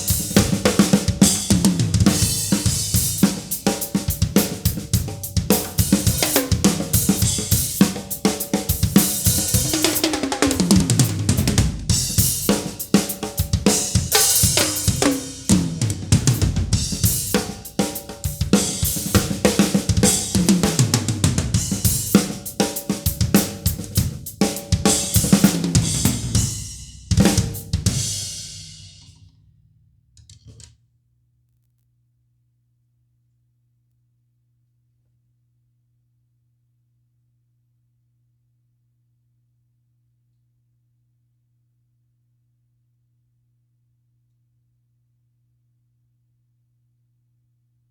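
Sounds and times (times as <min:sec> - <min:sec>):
drum kit playing: 0:00.0 - 0:29.3.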